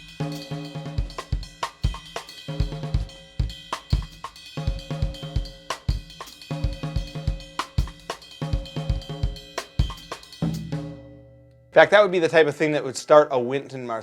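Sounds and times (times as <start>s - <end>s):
drum kit playing: 0.0s - 13.8s.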